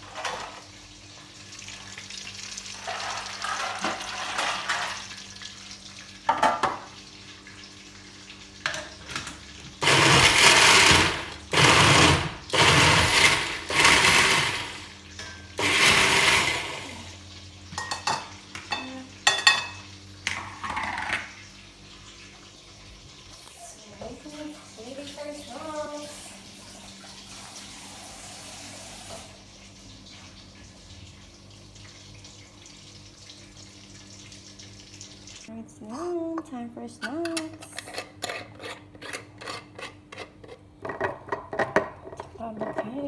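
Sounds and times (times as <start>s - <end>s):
blender pulsing: 9.8s - 15.0s, 15.6s - 17.2s
dishes clicking and clattering: 17.7s - 21.4s, 37.0s - 43.0s.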